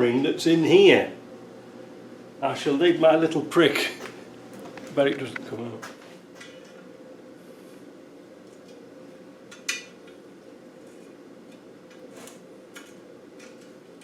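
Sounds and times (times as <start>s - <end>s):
steady hum: 0.0s - 14.0s.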